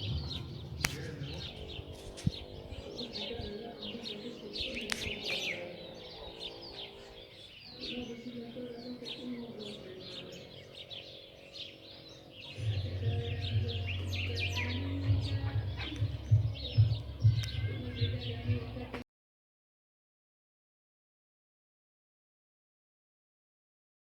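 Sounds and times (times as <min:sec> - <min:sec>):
parrots chirping and squawking: 0:09.0 - 0:18.4
low droning sound: 0:12.0 - 0:19.0.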